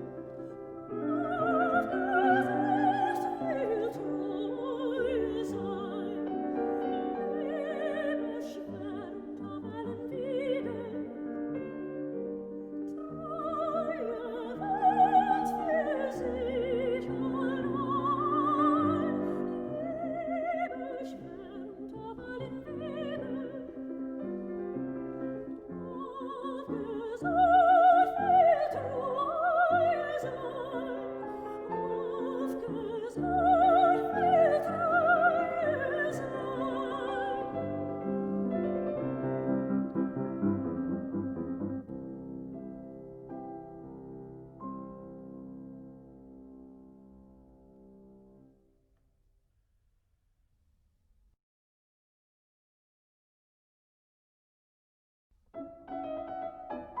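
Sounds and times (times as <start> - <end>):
soprano singing with vibrato: 0.0 - 11.5, 12.8 - 38.7
piano accompaniment: 0.0 - 48.4, 55.6 - 57.0.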